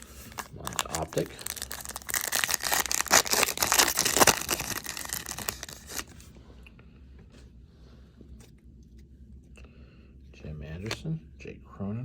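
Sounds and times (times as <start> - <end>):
foil wrapper crinkling and tearing: 0.0 - 6.1.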